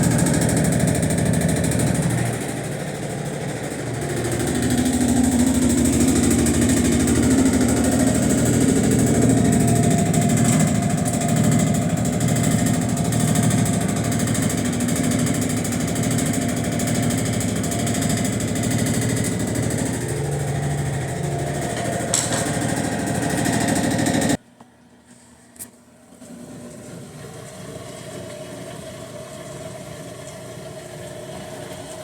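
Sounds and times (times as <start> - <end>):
washing machine rattling and humming: 0.0 - 24.5, 25.8 - 32.0.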